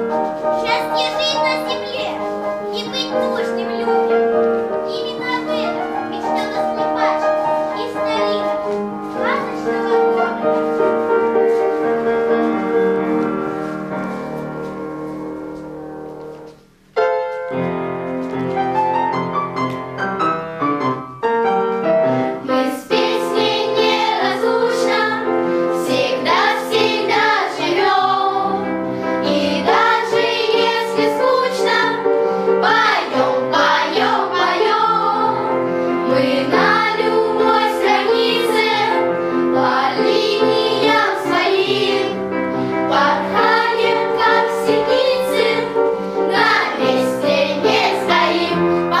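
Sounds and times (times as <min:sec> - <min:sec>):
instrumental music: 0:00.0 - 0:49.0
choir singing: 0:22.4 - 0:49.0.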